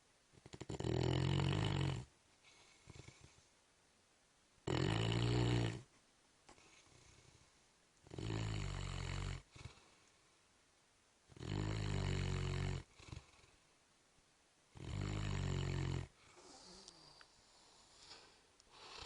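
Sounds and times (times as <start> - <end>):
dog snoring: 0.4 - 3.5, 4.6 - 5.9, 6.5 - 10.0, 11.3 - 13.6, 14.7 - 19.0.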